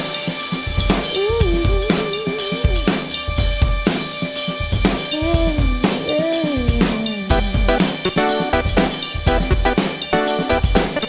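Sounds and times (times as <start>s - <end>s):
drum kit groove: 0.0s - 11.0s
held chord: 5.1s - 11.0s.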